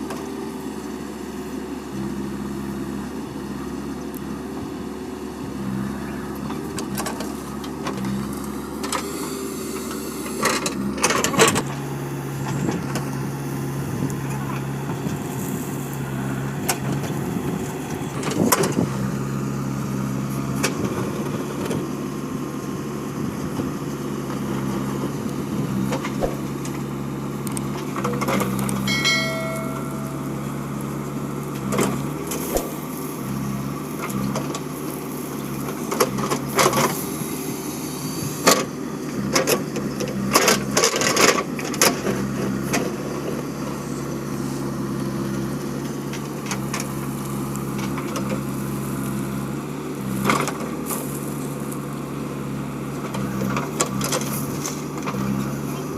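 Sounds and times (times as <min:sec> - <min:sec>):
diesel engine running: 0:00.0 - 0:55.9
sharp metallic clanks: 0:28.9 - 0:30.8.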